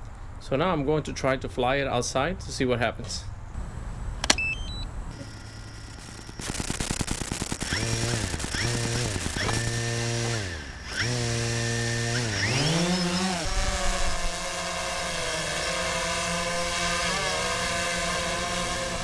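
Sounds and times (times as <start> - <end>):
drone motors whining: 3.6 - 19.0
rapid ticking of motors starting: 5.1 - 19.0.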